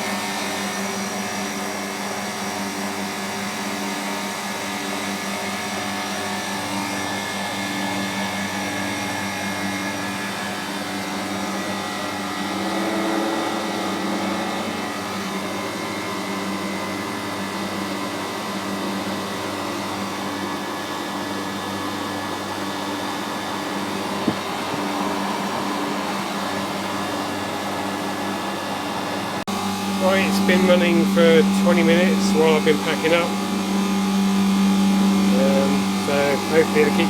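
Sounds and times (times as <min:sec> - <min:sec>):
compressor humming: 0:00.0 - 0:37.0.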